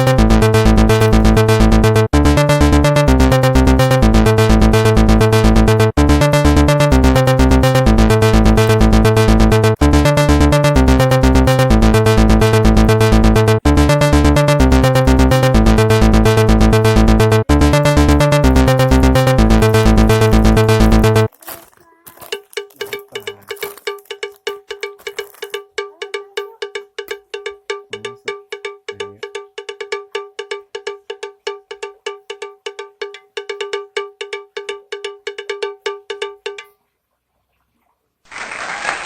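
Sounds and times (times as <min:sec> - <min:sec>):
electronic music with steady beat: 0:00.0 - 0:21.3.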